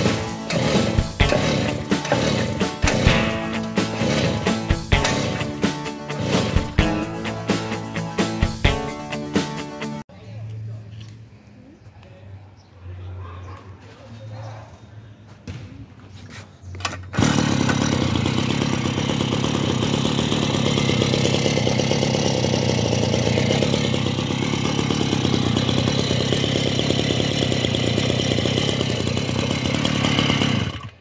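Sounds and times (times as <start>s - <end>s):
lawn mower engine running: 0.0s - 10.0s, 16.8s - 31.0s.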